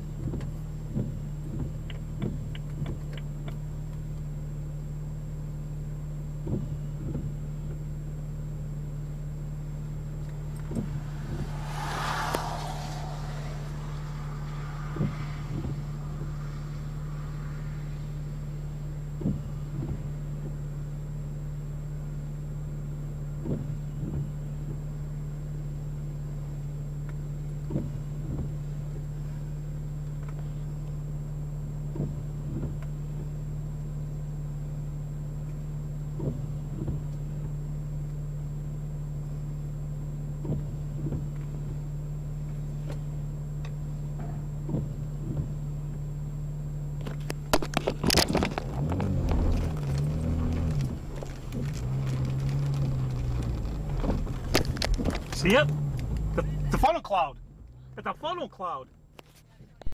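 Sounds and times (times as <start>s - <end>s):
car engine idling: 0.0s - 59.9s.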